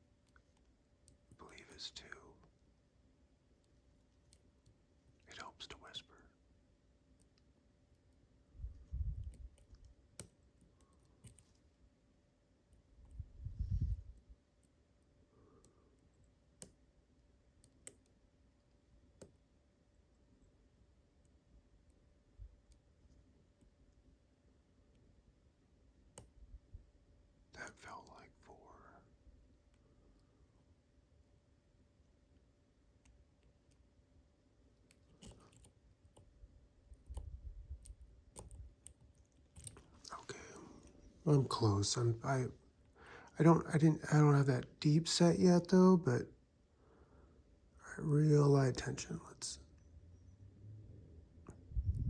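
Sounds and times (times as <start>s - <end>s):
lock pick clicks: 36.9s - 39.9s.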